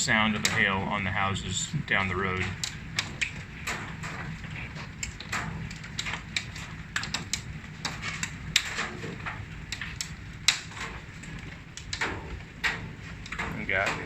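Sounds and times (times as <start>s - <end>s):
hail rushing on houses: 0.0s - 14.0s
hailstones clicking on hard surfaces: 0.0s - 14.0s.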